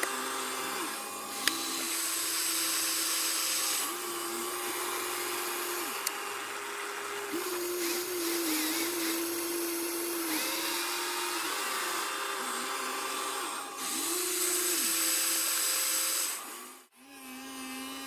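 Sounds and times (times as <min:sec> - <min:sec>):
small electric motors whining: 0:00.0 - 0:18.0.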